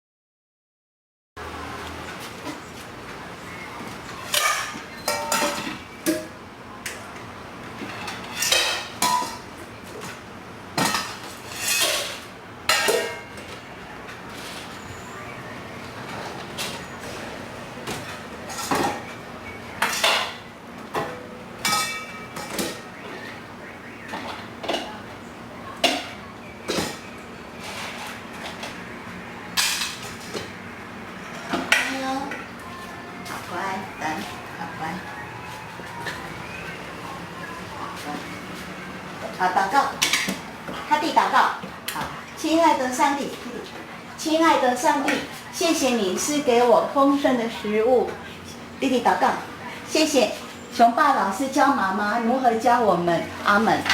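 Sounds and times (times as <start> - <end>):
dishes clinking: 4.2 - 6.4, 7.8 - 9.5, 10.8 - 13.6, 17.9 - 19.1, 19.8 - 22.9, 25.8 - 28.8, 29.6 - 30.5.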